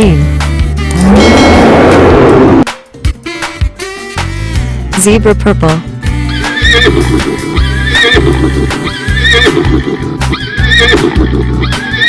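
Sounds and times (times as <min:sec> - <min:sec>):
high warbling whinny-like figure: 0:01.0 - 0:02.6
upbeat music with bass beat: 0:06.0 - 0:12.0.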